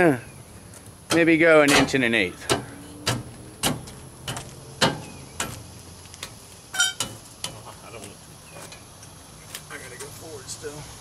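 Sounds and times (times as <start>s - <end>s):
metallic ring: 6.7s - 7.0s.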